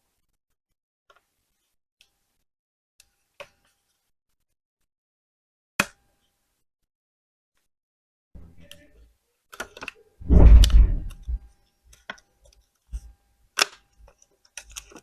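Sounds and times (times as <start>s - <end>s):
low rubbing rumble: 10.2s - 11.4s.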